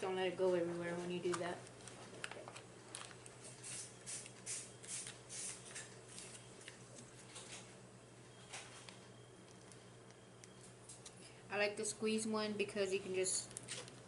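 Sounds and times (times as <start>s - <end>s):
squeeze bottle sputtering spurts: 3.4s - 6.4s.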